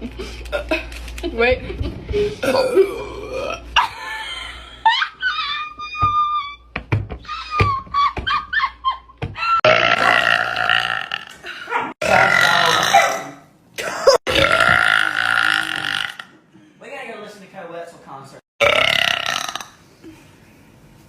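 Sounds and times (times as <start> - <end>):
woman burping: 2.4 - 3.8, 9.6 - 11.4, 12.0 - 16.3, 18.6 - 19.7.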